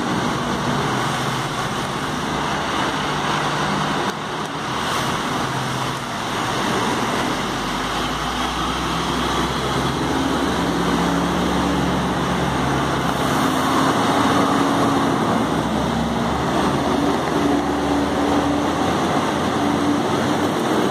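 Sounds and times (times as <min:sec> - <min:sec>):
city traffic: 0:00.0 - 0:20.9
fire truck engines accelerating: 0:00.0 - 0:20.9.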